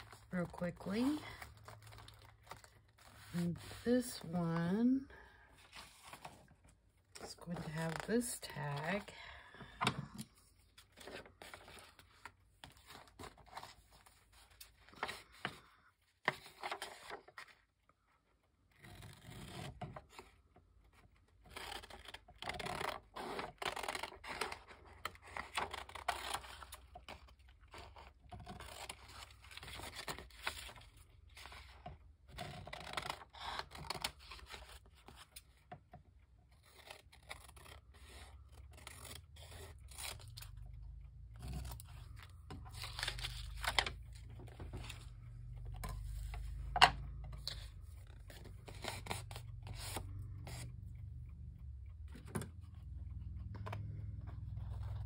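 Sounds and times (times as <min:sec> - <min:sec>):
scraping and rustling paper: 0:00.0 - 0:17.7, 0:18.7 - 0:35.7, 0:36.4 - 0:50.8.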